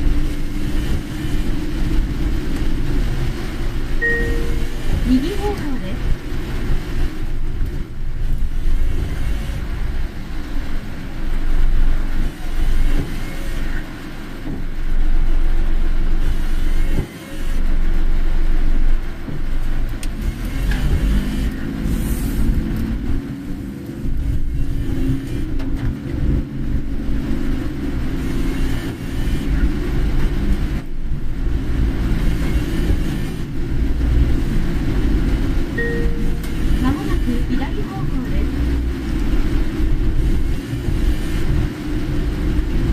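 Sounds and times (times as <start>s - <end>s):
car engine and tyre rumble: 0.0s - 42.9s
wet road hiss: 4.6s - 25.5s.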